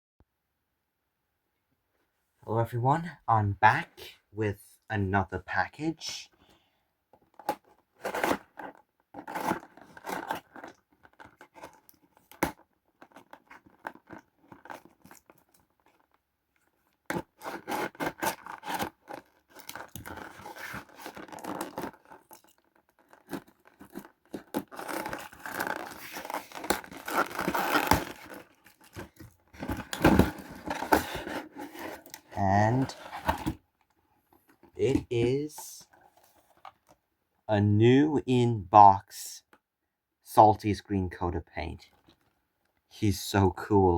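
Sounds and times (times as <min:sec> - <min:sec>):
packaging scraping and tearing: 0:07.4 - 0:16.2, 0:17.0 - 0:33.6.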